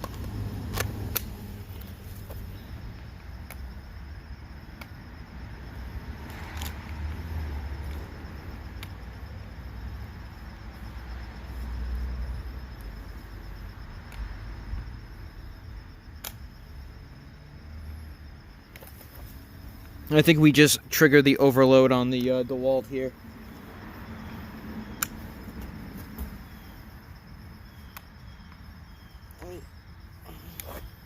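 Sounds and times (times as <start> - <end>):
sharp clicks: 0.0 - 2.4, 16.2 - 16.5, 25.0 - 25.3.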